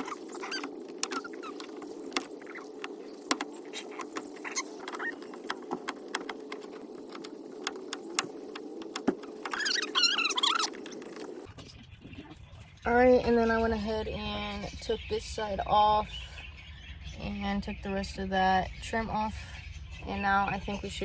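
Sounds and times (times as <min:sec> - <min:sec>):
high wavering chirps: 0:00.0 - 0:21.0
steady low hum: 0:00.0 - 0:21.0.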